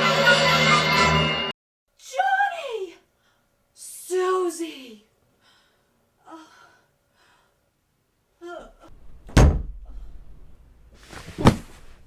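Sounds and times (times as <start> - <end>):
door slamming: 9.0 - 10.0.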